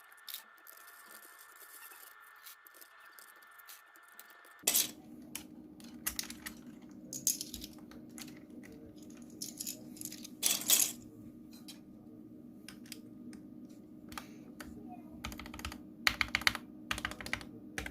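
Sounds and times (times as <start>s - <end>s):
low steady hum: 0.0s - 17.9s
mechanical keyboard typing: 15.2s - 17.9s.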